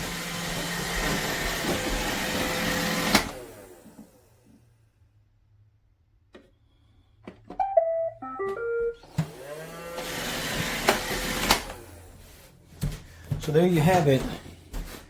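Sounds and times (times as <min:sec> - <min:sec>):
vacuum motor whine: 0:00.0 - 0:04.2
robot vacuum electronic beeps: 0:07.6 - 0:09.0.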